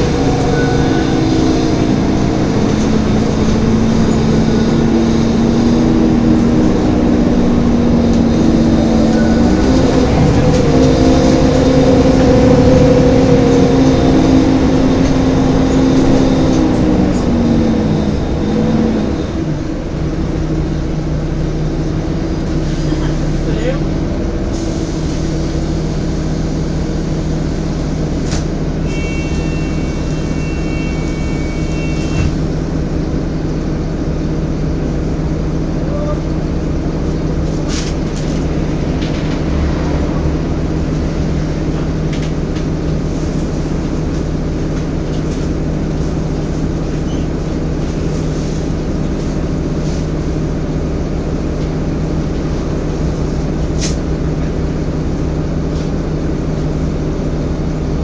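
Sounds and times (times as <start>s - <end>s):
high-pitched squeal: 0.0s - 6.0s
bus body rattling: 0.0s - 30.4s, 31.0s - 58.0s
bus engine drone: 0.0s - 58.0s.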